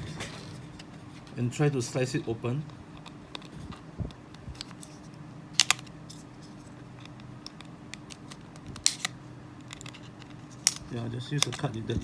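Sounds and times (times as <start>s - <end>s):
plastic casing snapping: 5.6s - 5.9s, 7.0s - 11.7s.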